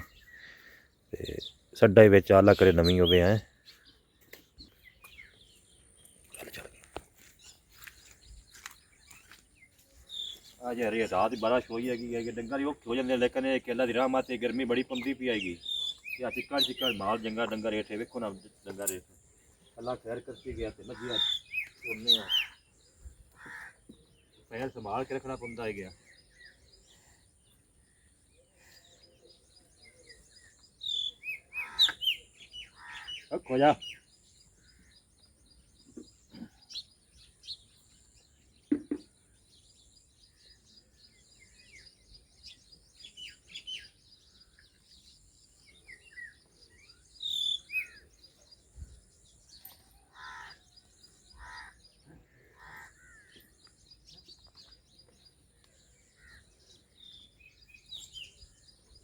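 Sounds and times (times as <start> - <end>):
faint birds chirping: 0.0 - 59.0
downward sweeping bird chirps: 41.4 - 48.8.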